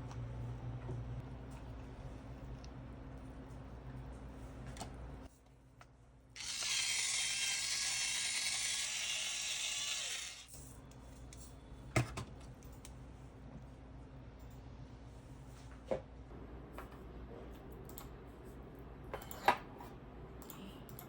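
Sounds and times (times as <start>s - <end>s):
ratchet-like mechanical grinding: 6.4s - 10.5s.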